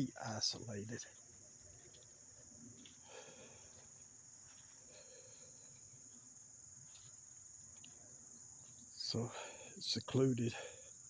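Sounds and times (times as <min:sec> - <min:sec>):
insects chirping: 0:00.0 - 0:11.0.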